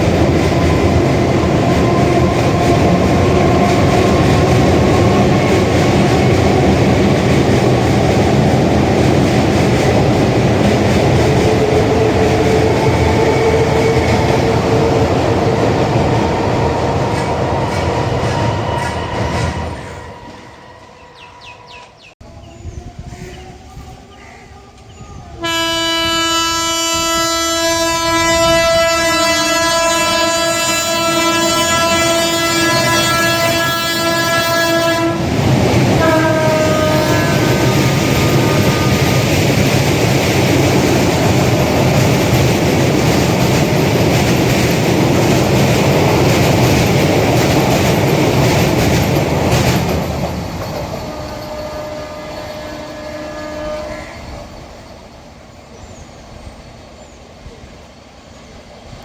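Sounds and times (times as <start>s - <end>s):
train wheels rattling on rails: 0.0s - 22.1s, 24.8s - 57.8s
electric train horn: 22.5s - 35.3s, 36.0s - 39.4s, 51.0s - 54.4s.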